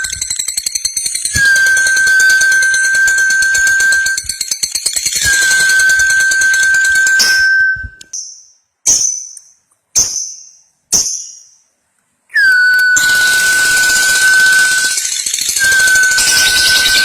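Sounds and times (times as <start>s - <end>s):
sharp bird chirps: 12.4s - 17.0s.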